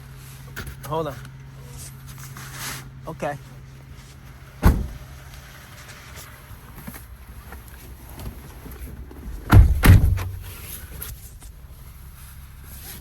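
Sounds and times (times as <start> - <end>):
low cabin hum: 2.9 - 13.0
heavy low thumps: 9.3 - 10.6.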